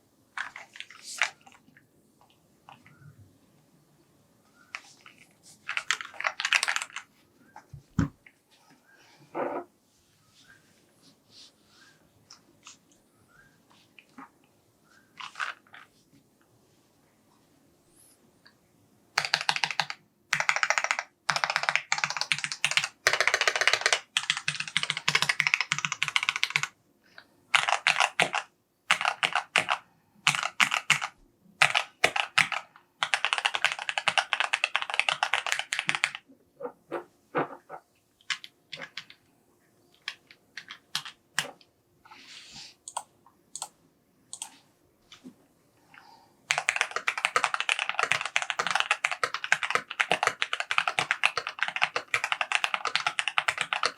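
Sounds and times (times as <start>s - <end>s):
mechanical keyboard typing: 5.6s - 7.1s, 19.2s - 26.7s, 27.5s - 36.2s, 40.0s - 41.5s, 42.9s - 43.7s, 46.5s - 53.9s.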